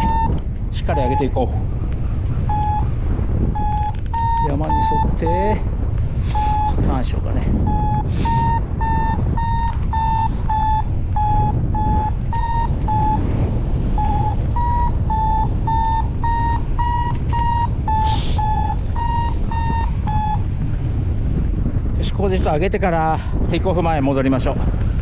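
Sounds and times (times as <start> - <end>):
variometer beeping: 0.0 - 5.6, 6.3 - 21.2
wind rush on microphone: 0.0 - 25.0.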